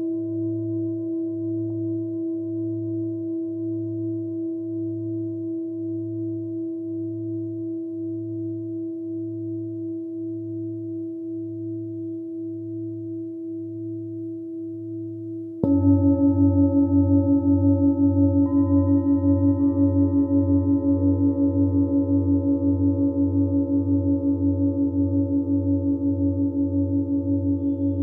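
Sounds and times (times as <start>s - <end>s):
singing bowl ringing: 15.6s - 28.0s
wavering low hum: 15.6s - 28.0s.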